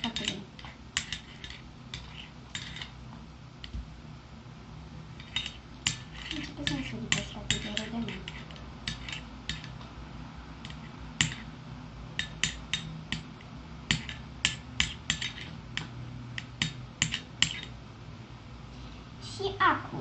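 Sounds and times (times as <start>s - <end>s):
teaspoon clinking on plate: 5.2s - 9.8s.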